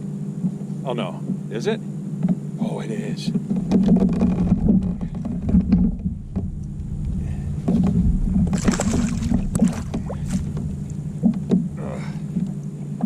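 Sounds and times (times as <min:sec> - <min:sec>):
steady low hum: 0:00.0 - 0:13.0
knocks and rattles on kayak: 0:03.2 - 0:13.0.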